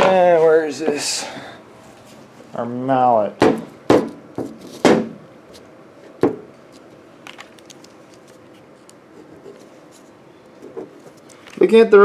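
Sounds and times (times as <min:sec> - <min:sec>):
heavy knock on bench: 0:03.4 - 0:04.2.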